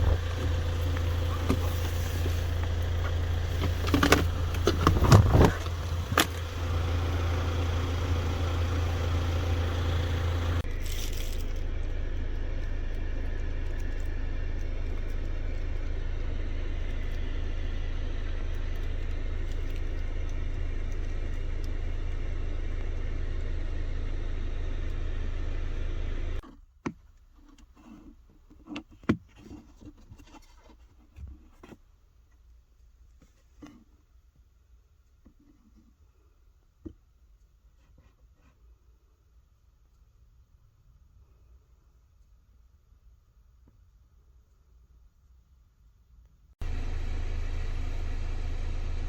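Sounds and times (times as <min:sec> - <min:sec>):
car engine idling: 0:00.0 - 0:26.4, 0:46.6 - 0:49.0.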